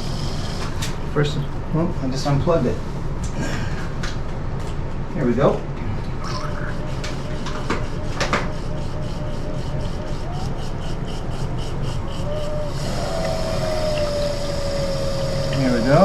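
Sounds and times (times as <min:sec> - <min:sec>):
electric water pump humming: 0:00.0 - 0:01.9, 0:06.0 - 0:16.0.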